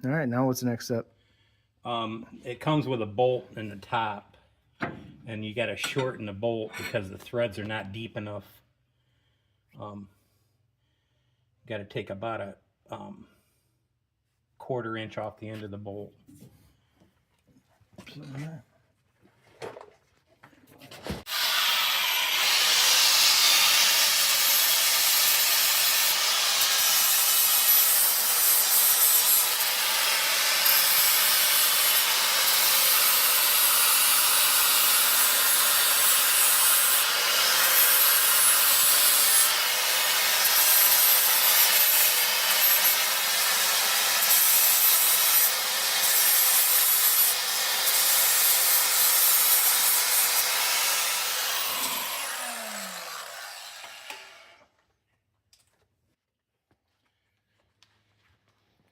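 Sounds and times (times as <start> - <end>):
power grinder grinding steel: 21.2 - 54.7.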